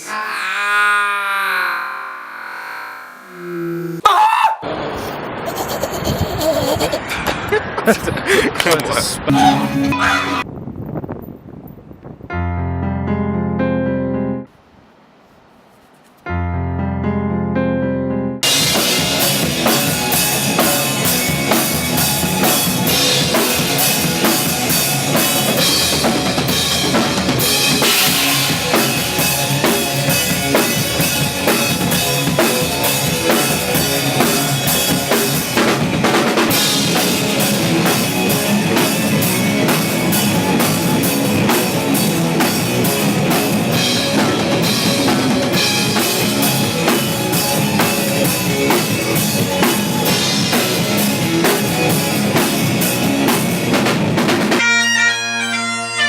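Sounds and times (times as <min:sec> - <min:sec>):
rock band music: 0:09.2 - 0:10.4, 0:16.8 - 0:56.0.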